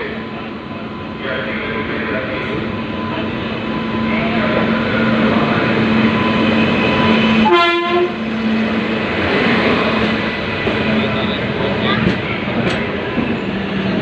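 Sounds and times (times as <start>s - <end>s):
train noise with low hum: 0.0s - 14.0s
short train horn toot: 7.4s - 8.2s.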